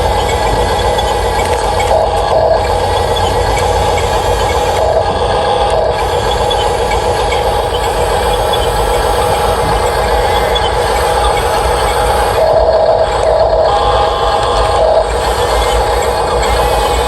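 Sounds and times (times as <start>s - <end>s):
electric motors whining: 0.0s - 17.0s.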